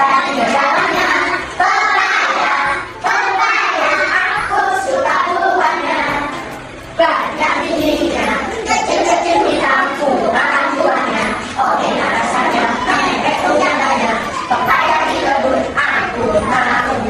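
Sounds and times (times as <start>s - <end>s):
children singing together: 0.0s - 17.0s.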